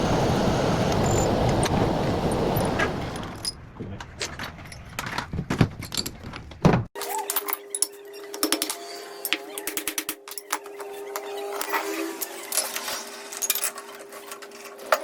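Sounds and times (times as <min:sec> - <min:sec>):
metal tools clinking and knocking: 0:04.2 - 0:08.6, 0:12.5 - 0:15.0.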